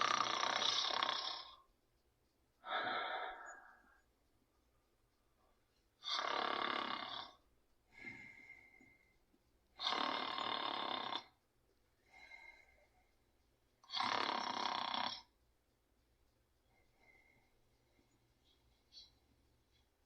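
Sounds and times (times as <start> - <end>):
cartoon snoring: 0.0 - 1.6, 6.0 - 7.4, 9.8 - 11.4, 13.8 - 15.3.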